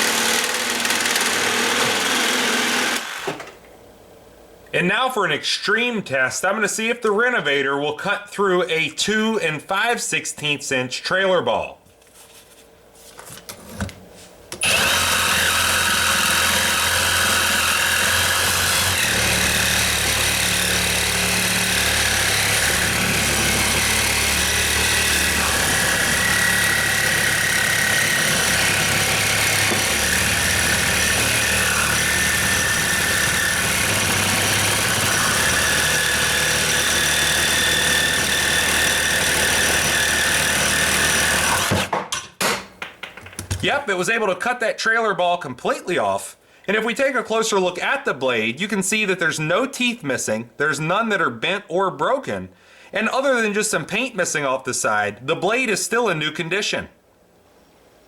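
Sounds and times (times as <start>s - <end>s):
reciprocating saw cutting steel: 0.0s - 3.5s, 14.6s - 41.8s.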